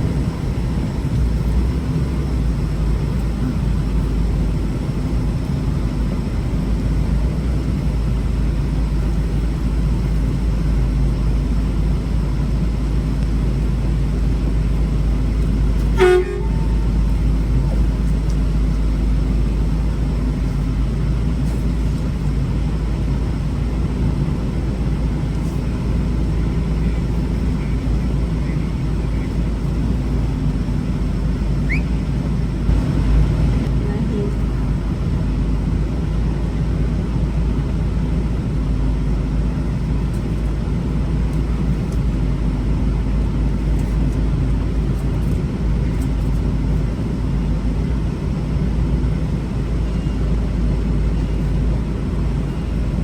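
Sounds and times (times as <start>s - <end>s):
truck engine idling: 0.0s - 53.0s
truck horn toot: 15.8s - 17.3s.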